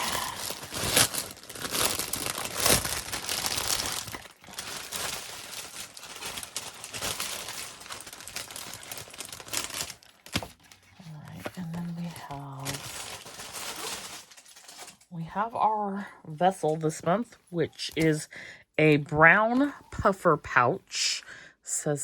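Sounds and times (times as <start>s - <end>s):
packaging crinkling and rustling: 0.0s - 15.1s.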